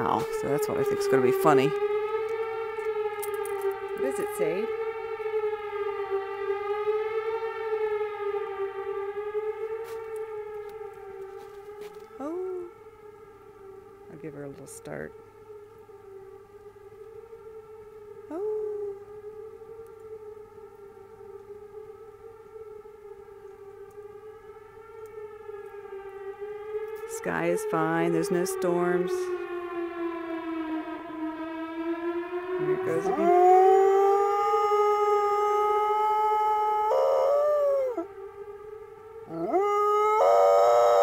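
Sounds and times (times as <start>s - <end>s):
warning siren steady tone: 0.0s - 41.0s.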